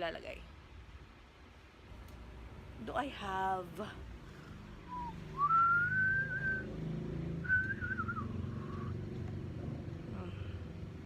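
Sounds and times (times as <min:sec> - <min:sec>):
person whistling: 0:04.9 - 0:06.7, 0:07.4 - 0:08.9.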